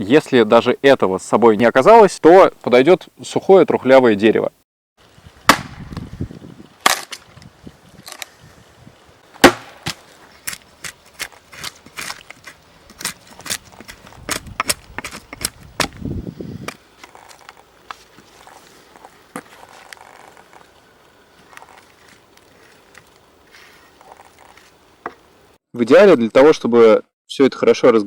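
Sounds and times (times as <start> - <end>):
dry wood cracking: 6.8 - 8.4, 9.3 - 16.1, 16.7 - 25.2
rustling: 16.7 - 25.6.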